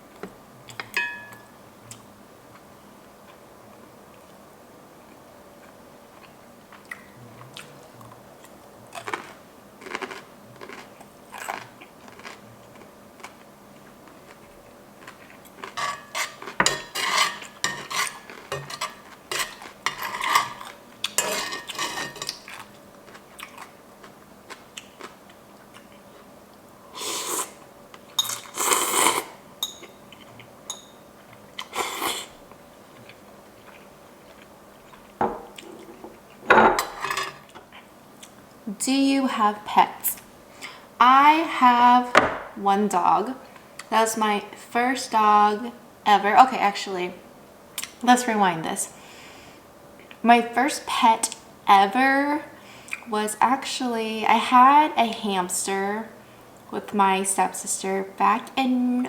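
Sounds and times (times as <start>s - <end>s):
faint steady hum: 0.0s - 59.0s
utensils clinking on plates: 0.8s - 1.5s, 15.7s - 22.4s, 29.6s - 30.0s, 30.7s - 31.0s, 35.2s - 37.5s.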